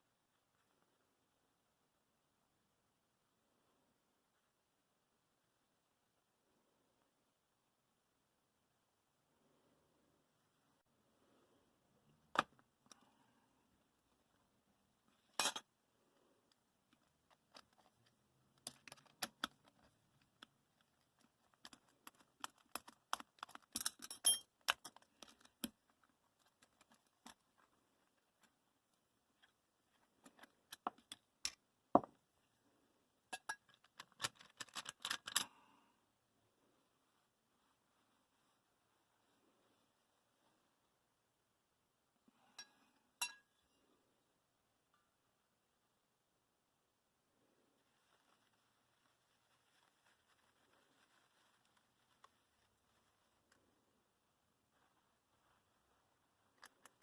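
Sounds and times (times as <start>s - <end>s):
metal parts and tools clinking: 15.3s - 15.7s, 21.6s - 25.7s, 33.4s - 35.5s.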